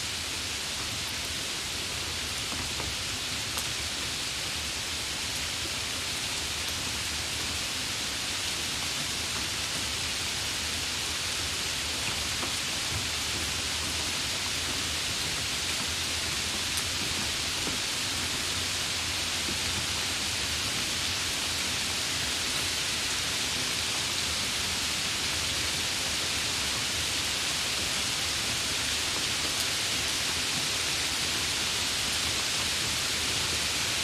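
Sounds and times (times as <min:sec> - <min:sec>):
heavy rain hissing: 0:00.0 - 0:34.0.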